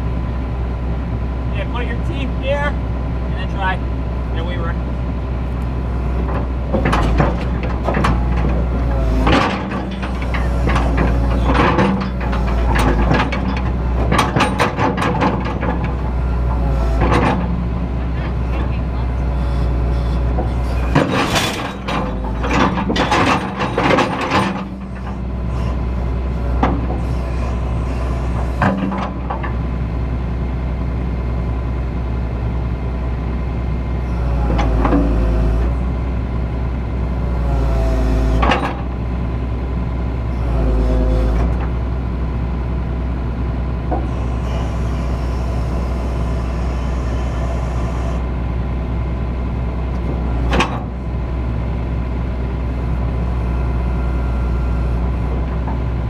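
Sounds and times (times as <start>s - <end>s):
diesel engine running: 0.0s - 56.0s
metal clanks and knocks: 6.2s - 25.7s, 28.2s - 29.6s, 38.4s - 38.9s, 50.0s - 51.0s
short squeals: 19.2s - 29.2s, 40.4s - 41.6s.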